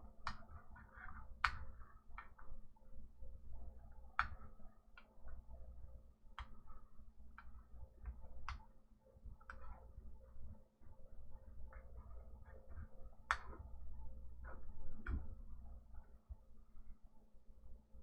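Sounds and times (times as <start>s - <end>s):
low steady hum: 0.0s - 18.0s
small clicks and taps: 0.1s - 2.6s, 3.8s - 5.6s, 6.3s - 10.0s, 11.7s - 16.1s.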